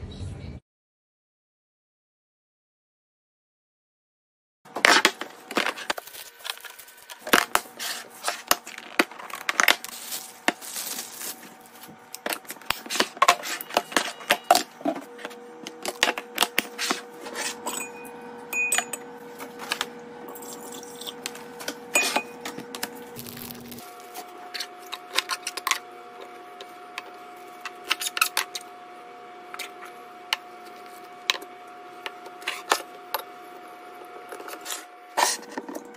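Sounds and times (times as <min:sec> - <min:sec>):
packaging rustling and tearing: 0:04.7 - 0:17.5, 0:22.8 - 0:25.8.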